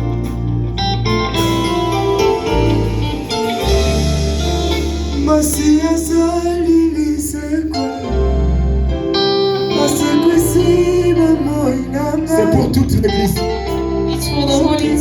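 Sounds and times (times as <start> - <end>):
guitar: 0.0 - 15.0
held bass notes: 0.0 - 15.0
cymbal strokes: 1.4 - 6.0
gospel singing: 2.2 - 15.0.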